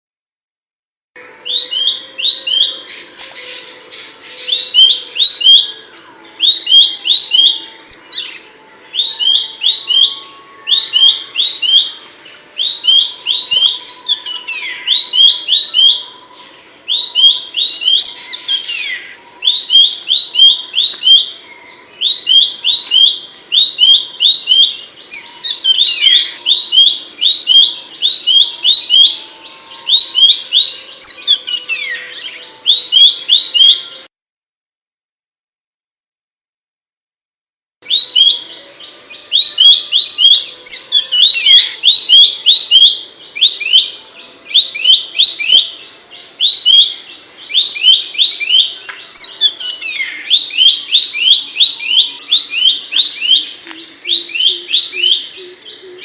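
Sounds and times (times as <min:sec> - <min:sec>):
bird singing sharp high notes: 0:01.2 - 0:34.1, 0:37.8 - 0:56.0
bird downward-sliding calls: 0:22.0 - 0:34.0, 0:37.8 - 0:56.0.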